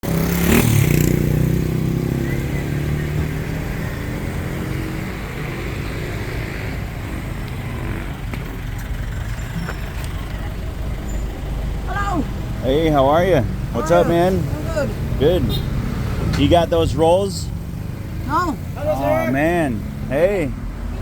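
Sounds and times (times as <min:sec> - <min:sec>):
motorcycle engine running: 0:00.0 - 0:03.0
street traffic: 0:00.0 - 0:21.0.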